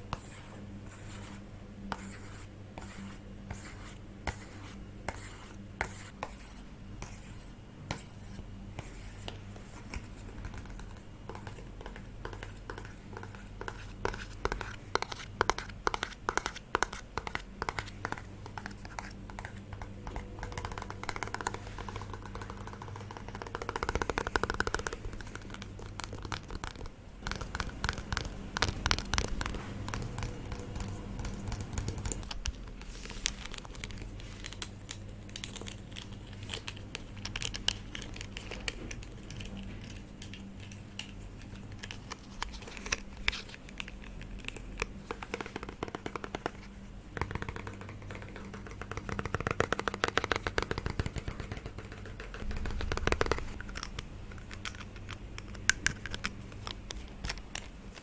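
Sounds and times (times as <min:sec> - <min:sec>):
low background hum: 0:00.0 - 0:58.0
scratching on small objects: 0:00.1 - 0:58.0
tapping on small objects: 0:42.9 - 0:58.0.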